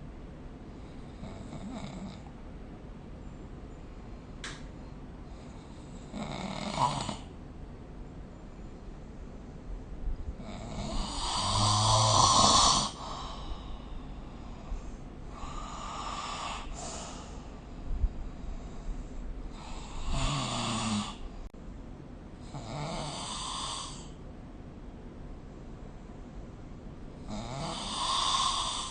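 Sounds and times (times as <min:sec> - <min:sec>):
person snoring: 0:05.6 - 0:07.3, 0:10.4 - 0:17.5, 0:18.6 - 0:21.4, 0:22.5 - 0:24.2, 0:27.2 - 0:28.9.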